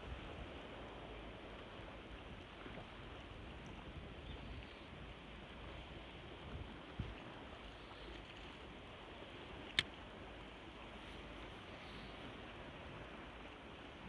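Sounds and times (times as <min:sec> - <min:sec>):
wind noise on microphone: 0:00.0 - 0:00.6.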